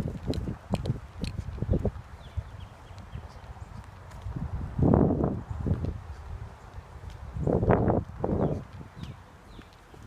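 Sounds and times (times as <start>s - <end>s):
footsteps in brush: 2.8s - 5.0s.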